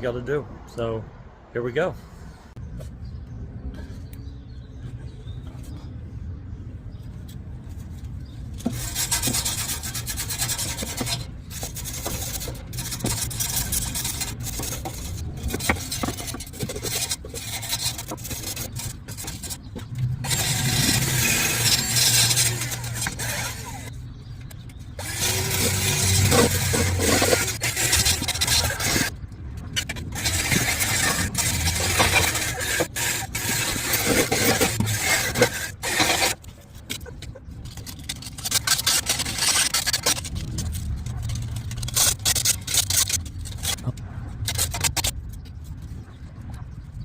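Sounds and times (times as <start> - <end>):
wire brush scraping metal: 8.6 - 23.9, 25.0 - 45.2.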